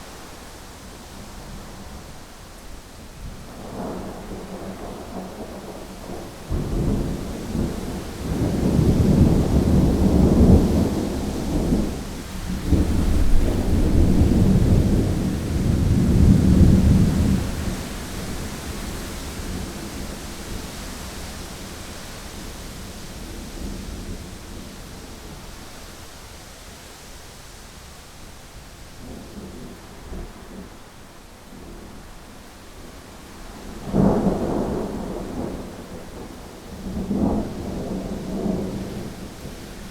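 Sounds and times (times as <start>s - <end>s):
thunder rumbling: 3.5s - 18.5s, 33.8s - 39.9s.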